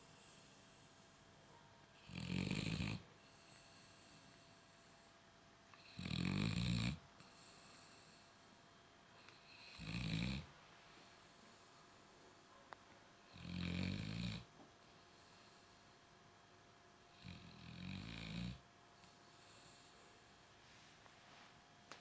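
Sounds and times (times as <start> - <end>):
dog snoring: 2.0 - 4.2, 5.8 - 8.2, 9.4 - 10.5, 13.3 - 14.5, 17.1 - 18.6.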